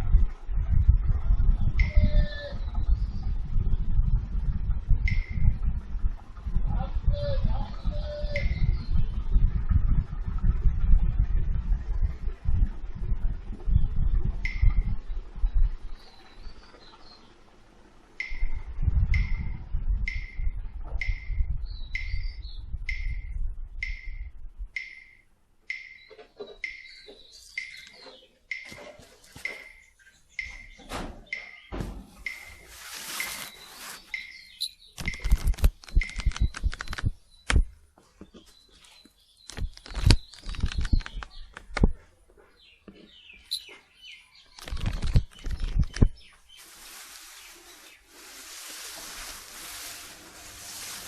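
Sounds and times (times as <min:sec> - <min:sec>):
sharp thuds and clatter: 0:30.8 - 0:32.6
warbling chirp: 0:32.2 - 0:35.3.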